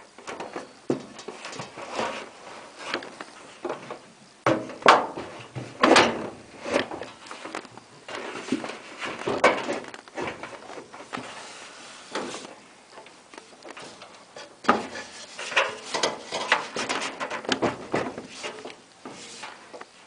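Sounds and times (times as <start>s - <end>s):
dryer parts knocking and clunking: 0.0s - 2.3s, 2.9s - 11.4s, 13.7s - 19.9s.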